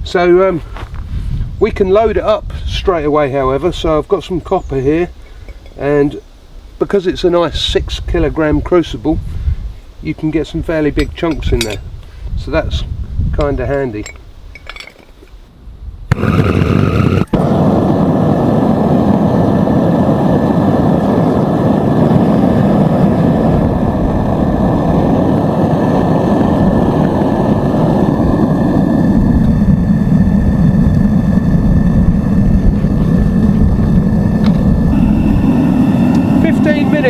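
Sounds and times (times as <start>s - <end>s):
gas burner roaring: 16.1s - 37.0s.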